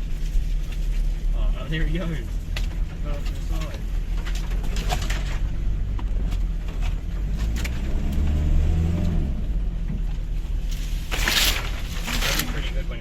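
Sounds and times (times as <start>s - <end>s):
vehicle engine from inside cab: 0.0s - 13.0s
vehicle knocks and rattles: 2.1s - 8.3s.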